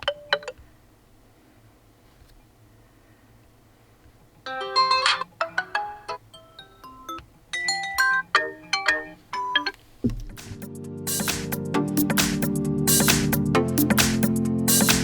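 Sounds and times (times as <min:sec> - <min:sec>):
phone ringtone chime melody: 0:04.5 - 0:09.7.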